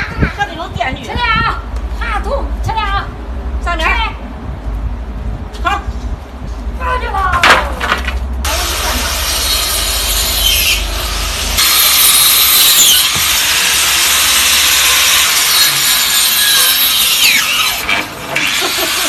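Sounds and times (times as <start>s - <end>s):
saw cutting wood: 8.5s - 19.0s.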